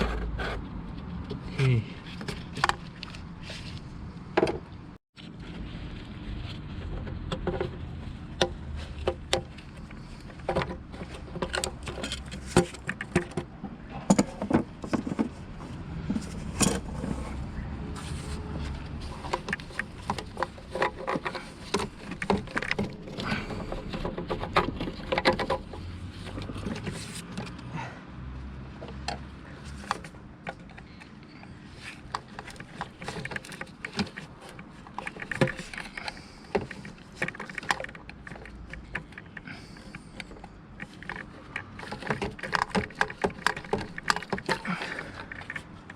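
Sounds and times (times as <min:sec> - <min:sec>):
tools and metal parts clicking: 0:08.4 - 0:13.4, 0:31.9 - 0:45.9.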